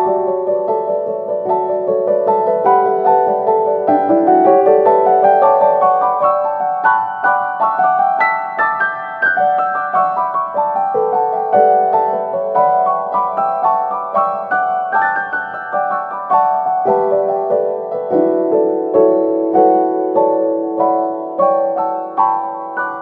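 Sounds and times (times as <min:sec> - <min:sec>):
gentle piano melody: 0:00.0 - 0:23.0.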